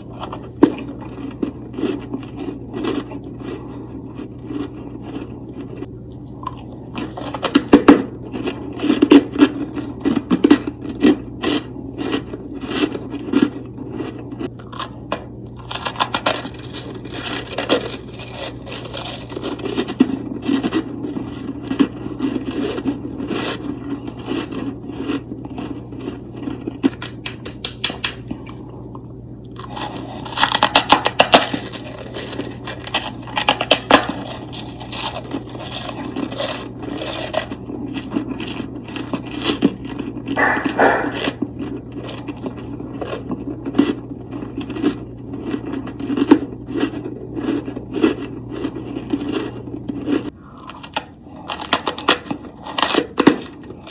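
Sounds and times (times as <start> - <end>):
steady low hum: 0.0 - 53.9
frost being scraped and crunched: 15.6 - 26.1, 29.6 - 39.7, 48.9 - 53.9.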